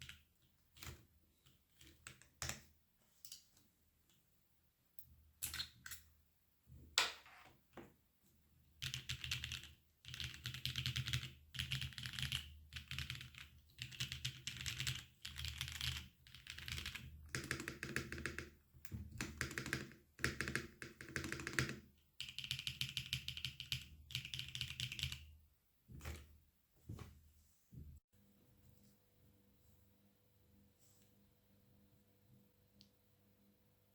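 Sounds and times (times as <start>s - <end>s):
mechanical keyboard typing: 8.8s - 18.5s, 19.2s - 25.2s.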